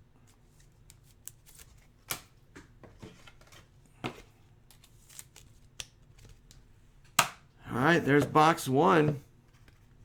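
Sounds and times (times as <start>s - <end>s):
cards clicking and rustling: 4.7s - 6.6s.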